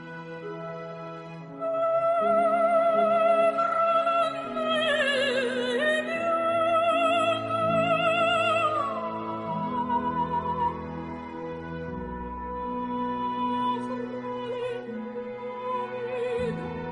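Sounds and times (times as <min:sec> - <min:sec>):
operatic high voice singing: 0:01.5 - 0:11.2.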